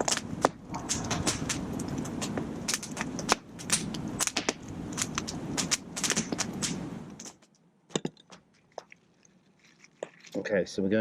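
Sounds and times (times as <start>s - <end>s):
low steady rush: 0.0s - 8.1s
campfire crackling and popping: 0.0s - 11.0s.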